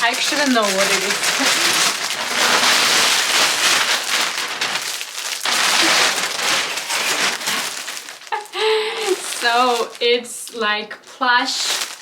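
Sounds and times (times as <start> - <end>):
wrapping paper crinkling: 0.0 - 12.0.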